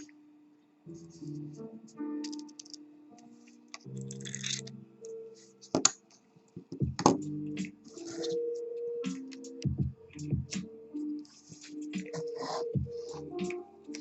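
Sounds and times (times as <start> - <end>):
soft background music: 0.0 - 14.0.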